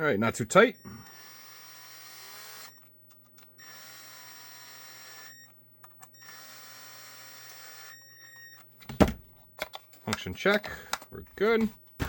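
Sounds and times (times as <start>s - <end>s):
electric screwdriver whining: 0.8s - 8.6s.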